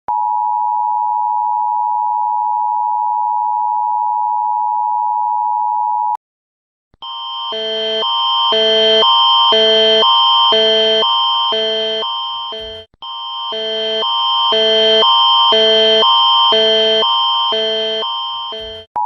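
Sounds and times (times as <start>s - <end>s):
alarm of alternating chords: 7.1s - 18.9s.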